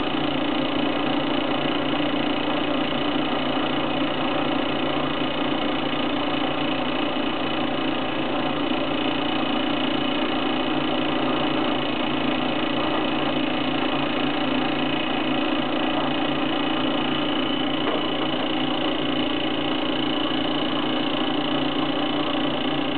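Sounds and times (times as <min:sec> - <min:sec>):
engine generator humming: 0:08.9 - 0:22.9.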